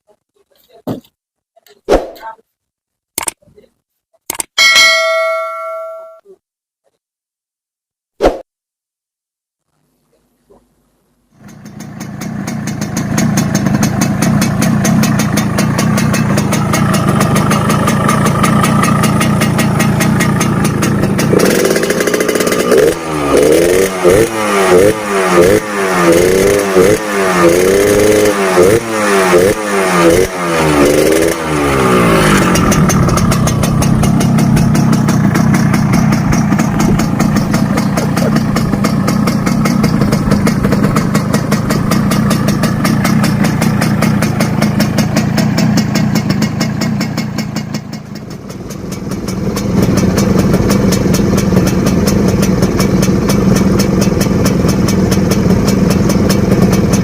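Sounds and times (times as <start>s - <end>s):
motorcycle engine revving and idling: 11.3s - 57.0s.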